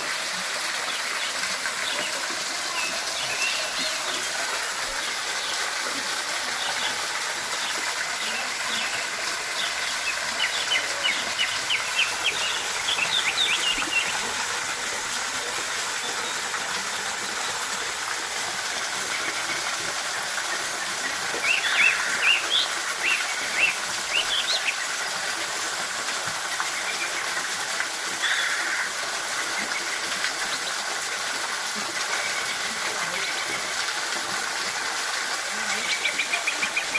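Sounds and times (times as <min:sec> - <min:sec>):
waterfall rushing: 0:00.0 - 0:36.9
birds chirping: 0:00.9 - 0:14.5, 0:21.0 - 0:24.9.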